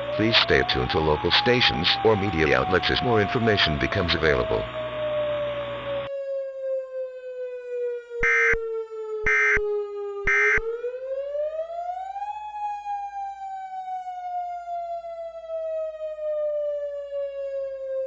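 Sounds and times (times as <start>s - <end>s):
siren wailing: 0.0s - 5.0s, 8.2s - 8.6s, 9.3s - 9.6s, 10.3s - 10.7s
screeching data bursts: 8.2s - 8.6s, 9.3s - 9.6s, 10.3s - 10.6s.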